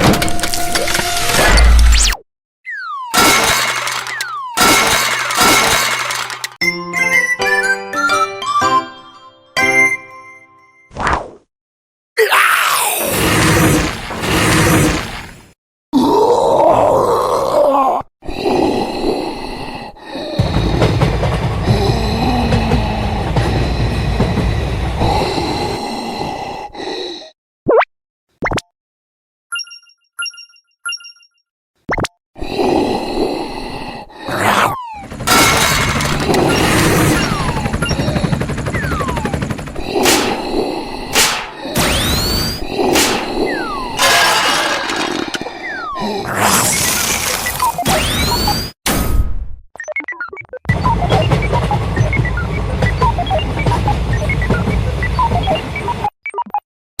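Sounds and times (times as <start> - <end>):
rapid cartoon rattling: 3.1 - 6.6, 13.0 - 15.5, 20.3 - 24.5, 34.3 - 48.6, 50.7 - 55.6
groaning voice: 12.2 - 15.2, 16.0 - 27.3, 32.4 - 38.4, 42.6 - 47.7.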